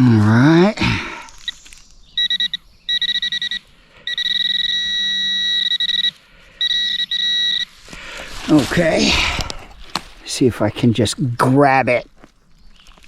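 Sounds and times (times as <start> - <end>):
metal detector beeping: 1.4 - 7.9.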